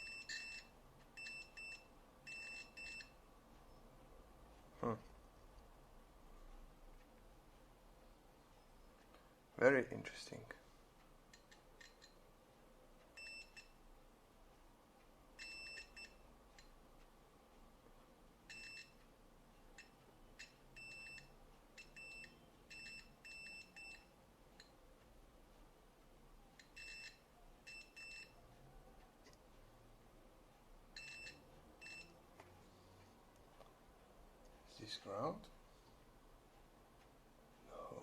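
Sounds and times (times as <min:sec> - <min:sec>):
multimeter buzzer beeping: 0:20.4 - 0:24.1, 0:31.0 - 0:32.2.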